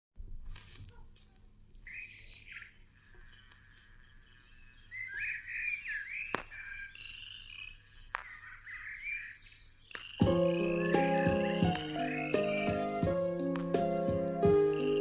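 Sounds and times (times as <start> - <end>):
swooping warbling chirps: 10.2 - 15.0.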